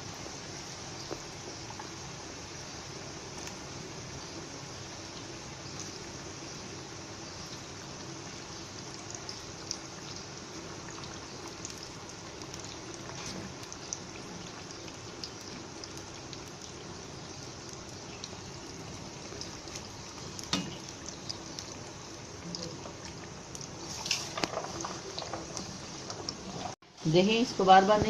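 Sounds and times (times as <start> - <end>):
potatoes sizzling in hot oil: 0.0 - 28.0
oil popping and crackling: 8.7 - 26.8.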